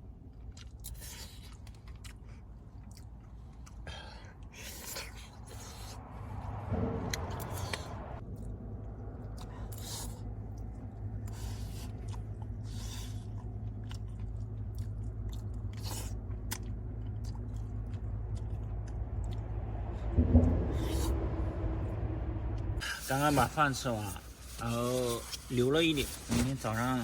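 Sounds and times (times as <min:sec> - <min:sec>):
person chewing crunchy food: 0:00.0 - 0:06.0, 0:09.2 - 0:19.4
low hum: 0:05.3 - 0:24.6.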